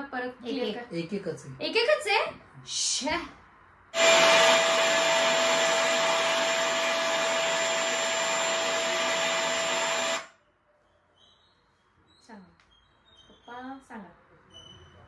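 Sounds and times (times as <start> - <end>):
vacuum cleaner through speaker: 4.0 - 10.3.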